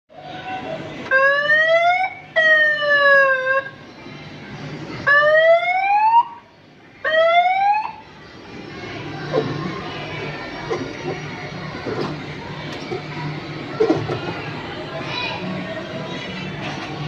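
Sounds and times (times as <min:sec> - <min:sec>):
fire engine siren sweeps: 0:01.1 - 0:03.7, 0:05.1 - 0:06.4.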